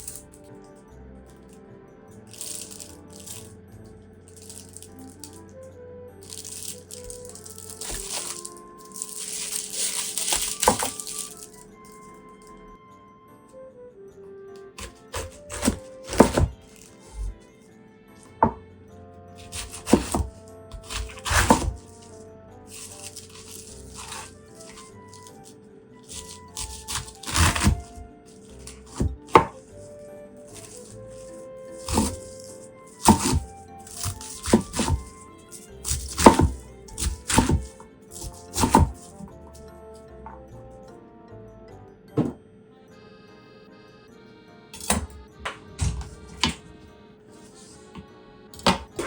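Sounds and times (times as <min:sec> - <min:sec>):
background music: 0:00.0 - 0:49.0
knife chopping cabbage on board: 0:09.2 - 0:11.2, 0:14.8 - 0:17.3, 0:19.4 - 0:21.9, 0:22.8 - 0:24.8, 0:26.1 - 0:28.0, 0:28.6 - 0:29.6, 0:31.8 - 0:32.3, 0:33.0 - 0:35.1, 0:35.8 - 0:39.2, 0:48.6 - 0:49.0.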